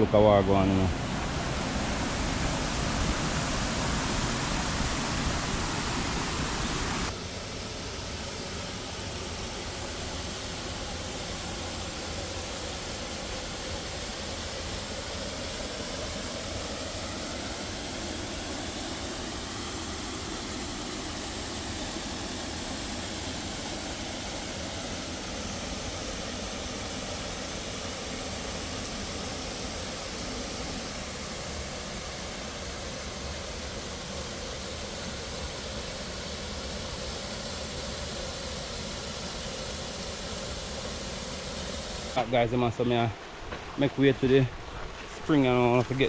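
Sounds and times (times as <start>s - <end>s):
waterfall rushing: 0.0s - 7.1s.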